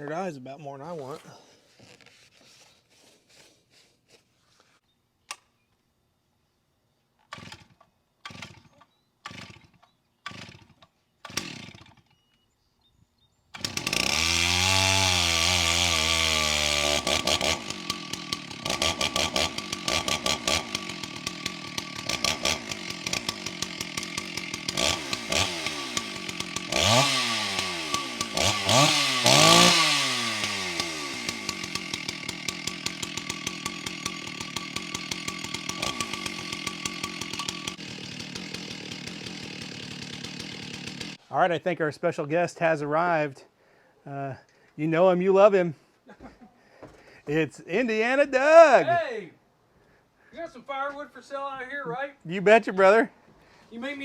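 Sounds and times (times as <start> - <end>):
chainsaw starter cord tugs: 7.2 - 12.4, 13.6 - 41.3
chainsaw engine revving: 7.3 - 12.1, 13.6 - 41.3.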